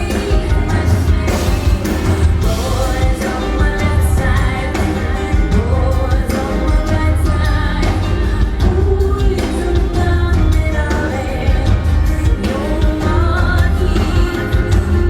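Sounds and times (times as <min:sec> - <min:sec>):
bass and drum beat: 0:00.0 - 0:15.0
woman singing: 0:00.0 - 0:15.0.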